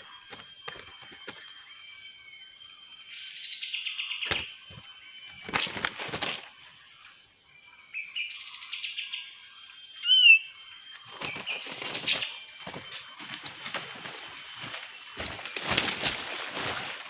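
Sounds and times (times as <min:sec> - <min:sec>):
wings fluttering and rustling: 0:00.0 - 0:01.7, 0:04.2 - 0:06.8, 0:10.9 - 0:17.0
birds chattering in trills: 0:00.0 - 0:17.0
loud bird whistle: 0:10.0 - 0:10.6.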